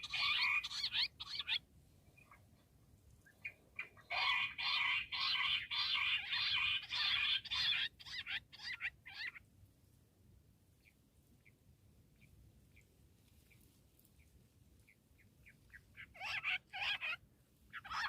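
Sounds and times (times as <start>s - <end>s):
quail calling: 0.0s - 1.6s, 3.4s - 9.4s, 15.4s - 18.0s.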